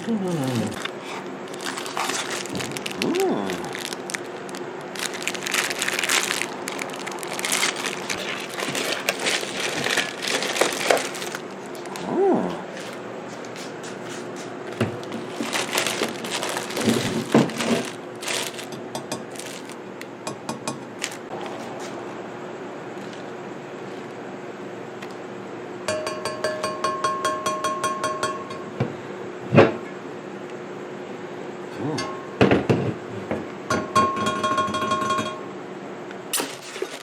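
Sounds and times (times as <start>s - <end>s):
faint steady hum: 0.0s - 37.0s
cardboard crackling and rustling: 0.3s - 12.1s, 14.7s - 19.8s, 21.0s - 21.6s.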